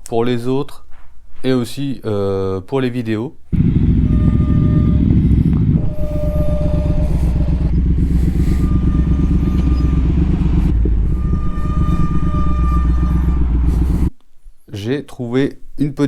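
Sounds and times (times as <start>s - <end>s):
brakes squealing: 3.5s - 14.1s
motorcycle engine running: 3.5s - 14.1s.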